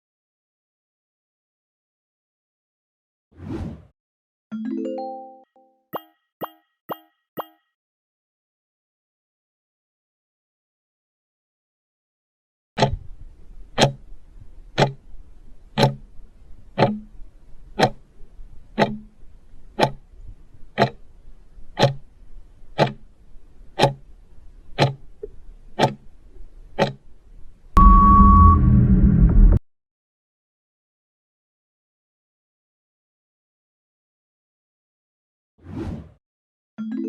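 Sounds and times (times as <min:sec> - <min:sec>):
clock ticking: 0:06.0 - 0:07.6, 0:12.8 - 0:21.1, 0:21.7 - 0:24.1, 0:24.7 - 0:26.2, 0:26.8 - 0:27.0
loud time-up tone: 0:27.8 - 0:29.6.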